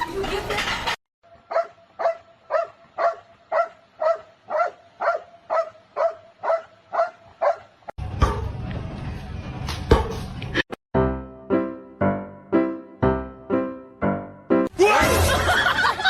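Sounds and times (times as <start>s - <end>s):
dog barking: 1.5s - 8.5s.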